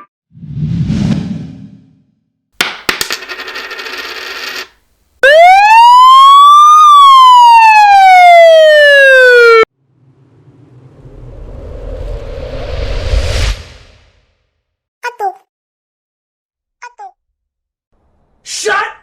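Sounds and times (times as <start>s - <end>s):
whoosh: 0.3s - 2.1s, 9.8s - 14.5s
siren-like tone: 5.2s - 9.7s.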